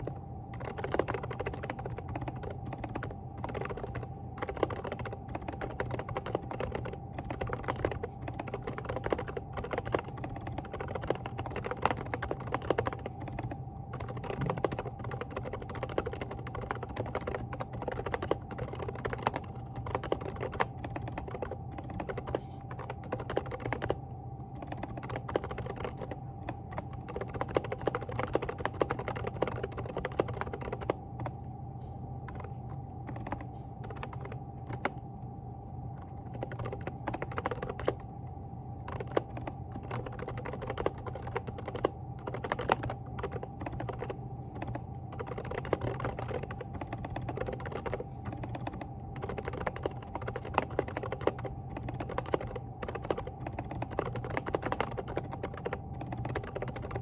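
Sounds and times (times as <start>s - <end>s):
mechanical keyboard typing: 0.0s - 31.4s, 32.3s - 35.0s, 36.0s - 38.1s, 38.8s - 57.0s
faint steady hum: 0.0s - 57.0s.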